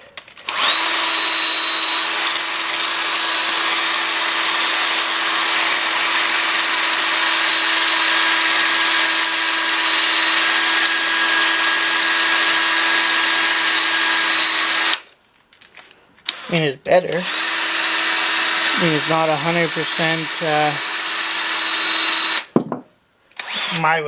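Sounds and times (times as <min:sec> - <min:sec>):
power drill whining: 0:00.0 - 0:15.2, 0:16.2 - 0:22.6, 0:23.3 - 0:24.0.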